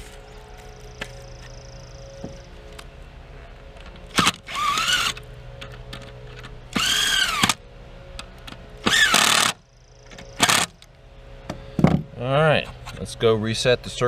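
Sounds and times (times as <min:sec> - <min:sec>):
power drill driving screws: 0:04.1 - 0:05.2, 0:06.8 - 0:07.6, 0:08.9 - 0:09.6, 0:10.4 - 0:10.7.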